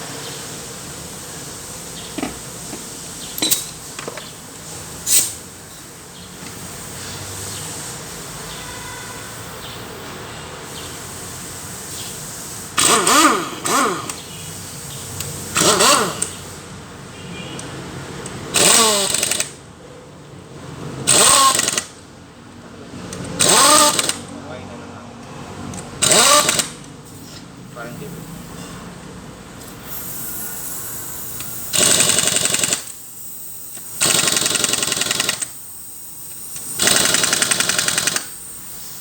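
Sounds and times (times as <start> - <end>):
small engine revving: 12.7 - 14.3, 15.5 - 16.4, 18.5 - 19.6, 21.0 - 21.9, 23.1 - 24.7, 25.7 - 26.8, 31.3 - 32.9, 36.5 - 38.4.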